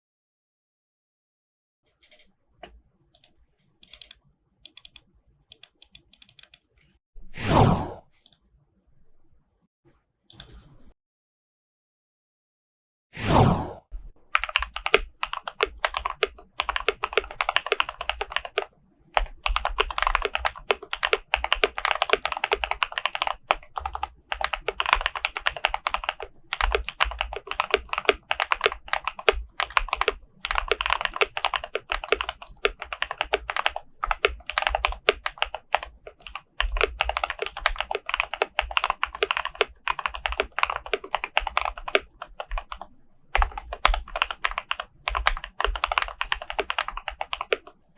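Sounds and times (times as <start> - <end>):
mechanical keyboard typing: 1.9 - 2.3, 3.2 - 6.7, 14.3 - 47.9.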